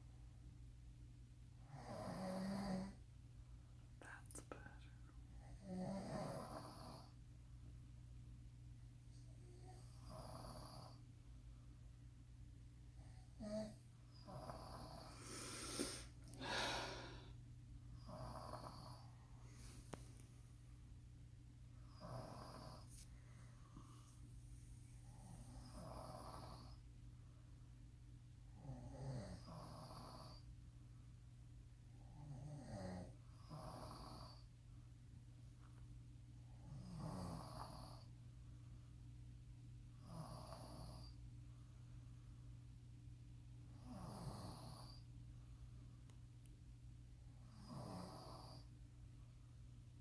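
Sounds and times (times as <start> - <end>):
person snoring: 1.7 - 3.0, 13.4 - 17.3, 22.0 - 23.0, 25.2 - 26.8, 47.5 - 48.6
breathy out-breath: 15.2 - 17.4.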